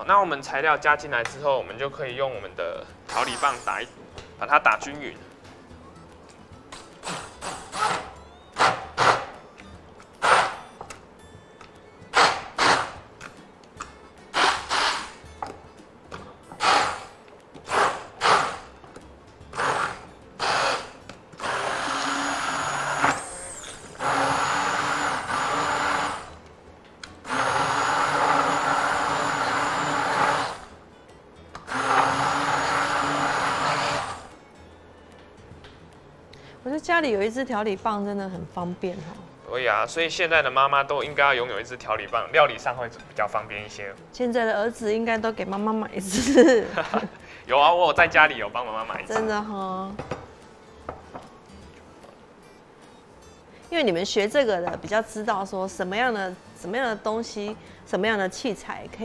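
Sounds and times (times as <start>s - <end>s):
immersion blender motor whine: 14.4s - 15.1s, 19.6s - 26.4s, 27.3s - 30.8s, 31.7s - 34.4s.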